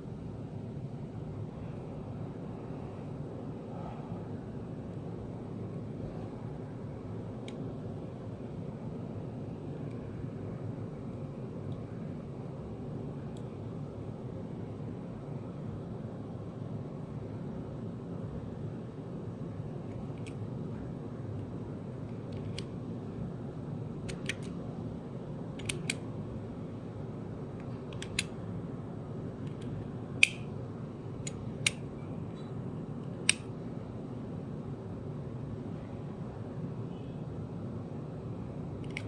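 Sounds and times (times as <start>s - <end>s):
utility knife clicking: 25.6s - 26.0s.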